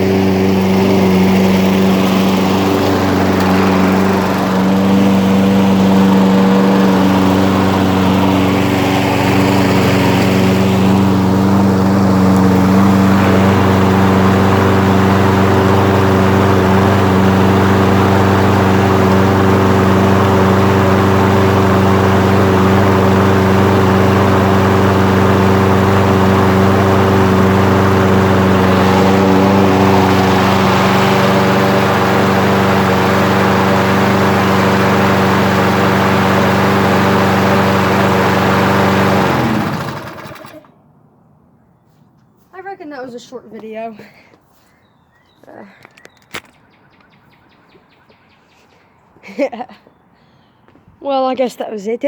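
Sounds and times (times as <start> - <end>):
lawn mower engine running: 0.0 - 40.9.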